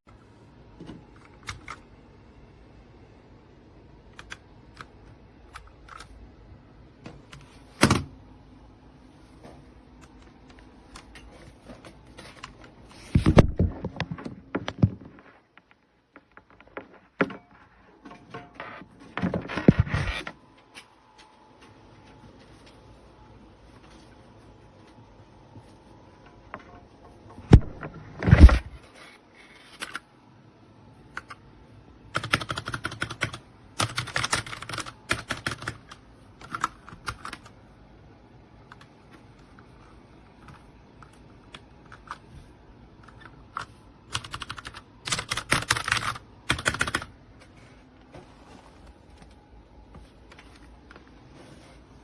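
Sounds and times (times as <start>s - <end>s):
mechanical keyboard typing: 4.1s - 6.2s, 32.1s - 37.6s, 43.1s - 47.1s.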